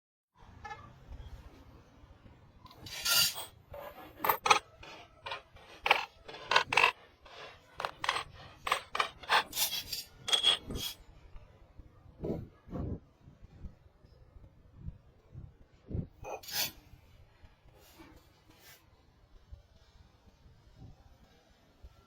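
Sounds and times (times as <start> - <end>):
rasping scraping strokes: 2.8 - 11.0.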